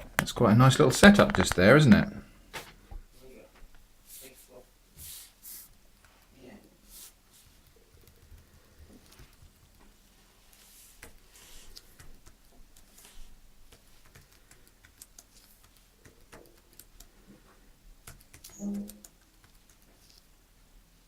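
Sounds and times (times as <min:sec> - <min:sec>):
typing on plastic keyboard keys: 0:13.9 - 0:17.1, 0:18.0 - 0:19.8.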